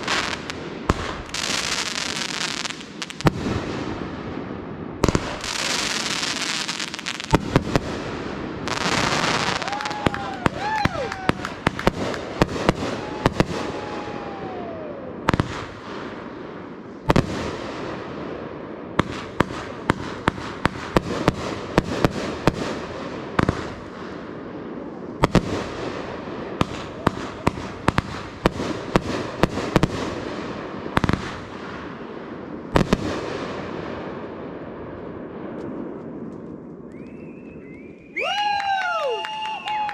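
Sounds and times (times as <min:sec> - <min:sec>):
fireworks crackling: 0:00.0 - 0:34.3
fireworks bursting with bangs: 0:00.0 - 0:38.1
falling whistle: 0:36.9 - 0:39.9.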